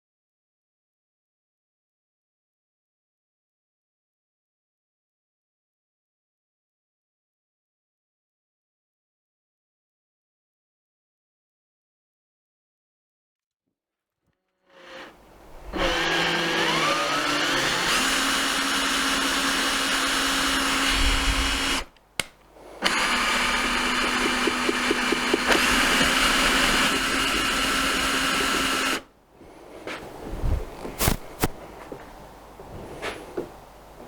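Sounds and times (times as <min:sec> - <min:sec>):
small electric motor whining: 0:14.7 - 0:21.9, 0:22.8 - 0:29.1.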